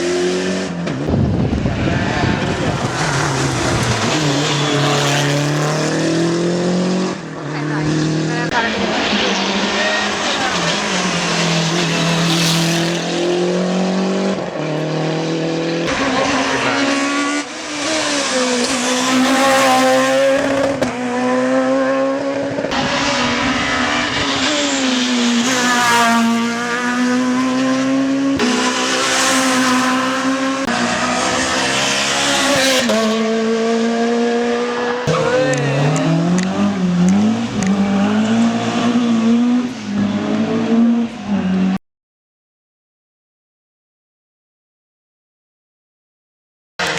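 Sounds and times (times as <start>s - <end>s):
rally car engines revving: 0.0s - 41.8s
tyre squeal: 3.8s - 5.4s.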